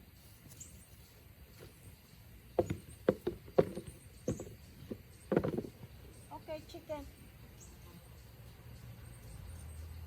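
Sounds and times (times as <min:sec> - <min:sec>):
potatoes knocking into container: 0:02.6 - 0:05.8.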